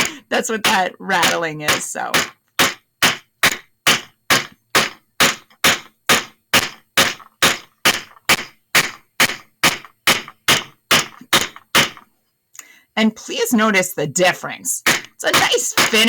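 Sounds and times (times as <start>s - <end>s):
hammer striking metal: 0.0s - 12.0s, 14.8s - 16.0s.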